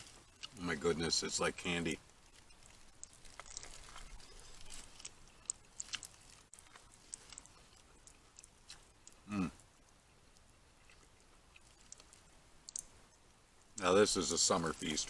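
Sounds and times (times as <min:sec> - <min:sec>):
chewing corn on the cob: 0:00.0 - 0:00.8, 0:01.6 - 0:13.0
person humming: 0:09.3 - 0:09.6.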